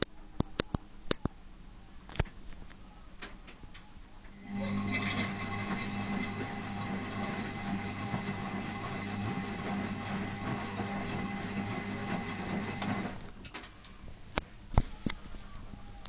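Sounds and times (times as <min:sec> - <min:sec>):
washing machine motor grinding hum: 0:04.3 - 0:13.3.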